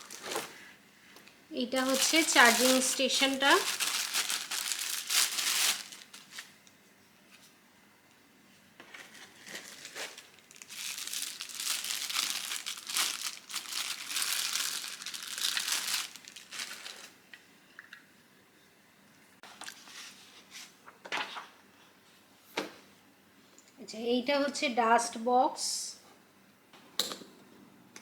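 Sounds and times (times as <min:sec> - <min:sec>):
packaging crinkling: 0:00.0 - 0:00.6, 0:01.7 - 0:06.6, 0:08.9 - 0:17.2.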